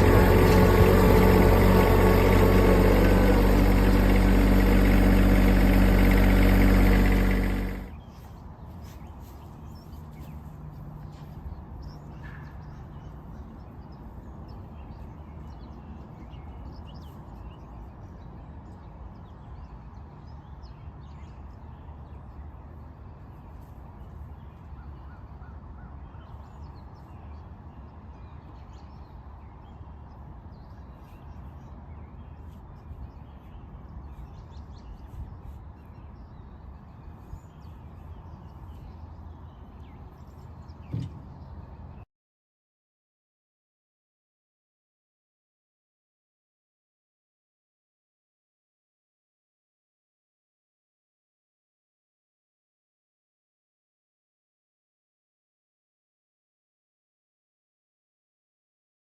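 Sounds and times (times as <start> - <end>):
tractor engine idling: 0.0 - 7.9.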